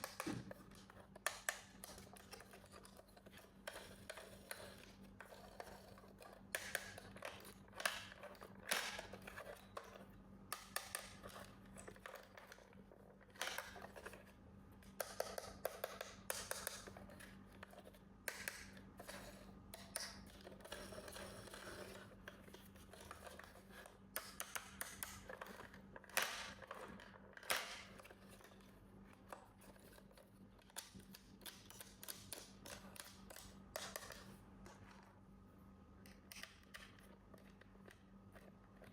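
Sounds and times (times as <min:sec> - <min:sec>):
faint steady hum: 0:00.0 - 0:38.9
clicks and snips: 0:14.8 - 0:35.1, 0:36.0 - 0:38.9.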